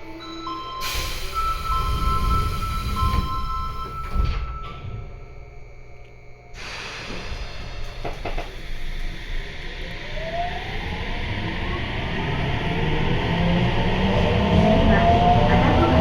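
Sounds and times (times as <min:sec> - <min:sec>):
train running noise: 0:00.0 - 0:16.0
inverter whine rising in pitch: 0:08.8 - 0:16.0.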